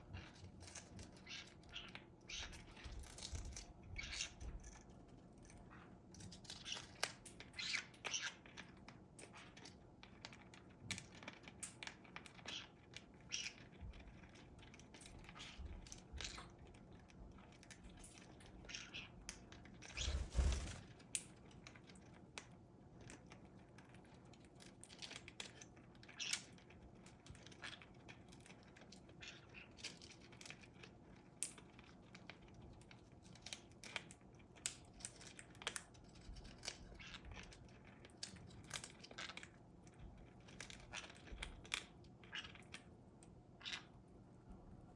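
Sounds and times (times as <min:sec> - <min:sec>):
parrot scuffling and playing: 0:00.1 - 0:08.7, 0:19.8 - 0:22.0.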